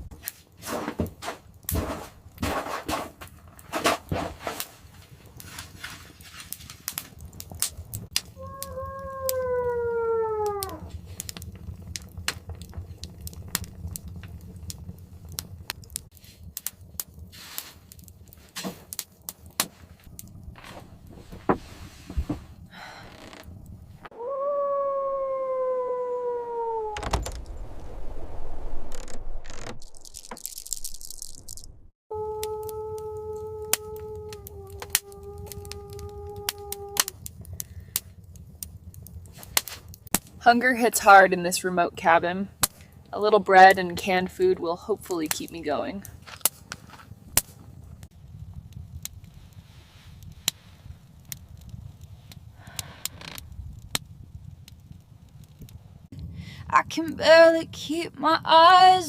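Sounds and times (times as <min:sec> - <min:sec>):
dog howling: 0:08.4 - 0:10.9, 0:24.1 - 0:27.0, 0:32.1 - 0:37.1
low rumble: 0:20.1 - 0:32.0.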